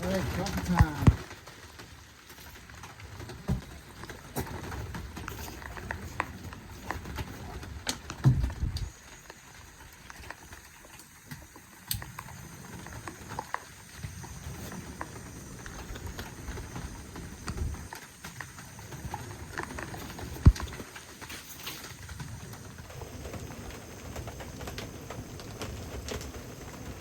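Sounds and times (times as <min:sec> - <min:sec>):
irregular taps and knocks: 0:03.2 - 0:08.9.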